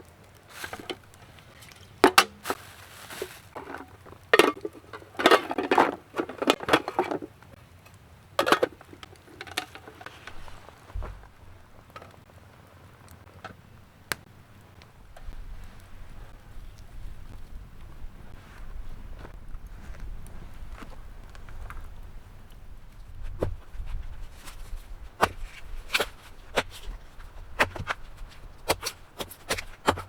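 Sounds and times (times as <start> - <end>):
blade chopping and cutting wood: 25.2 - 27.0, 27.6 - 30.0.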